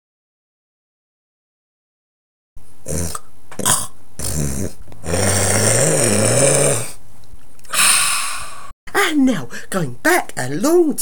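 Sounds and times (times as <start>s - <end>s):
person's low wavering vocal sound: 2.9s - 3.3s, 4.2s - 7.0s
short breathy noises: 7.6s - 8.7s.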